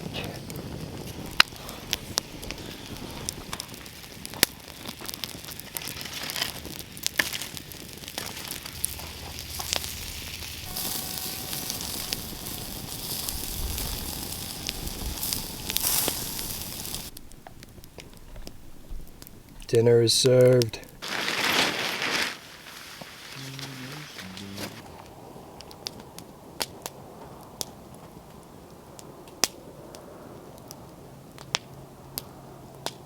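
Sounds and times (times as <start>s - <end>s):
sausages sizzling: 0.0s - 18.0s, 21.0s - 24.8s
campfire crackling and popping: 0.0s - 33.0s.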